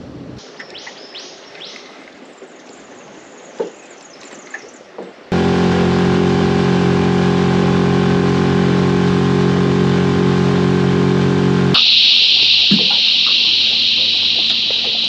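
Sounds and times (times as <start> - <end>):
outboard motor running: 5.3 - 11.8
steady hiss: 11.8 - 15.0.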